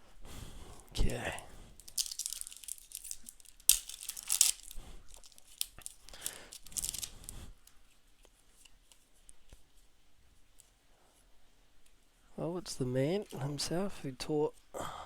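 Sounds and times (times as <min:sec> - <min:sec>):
wrapper tearing and crinkling: 0:01.8 - 0:07.4.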